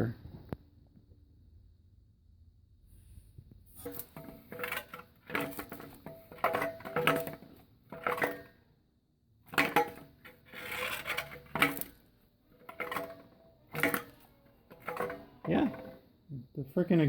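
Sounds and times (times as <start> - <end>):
metal exhaust pieces clanking: 3.8 - 8.6, 9.5 - 16.2.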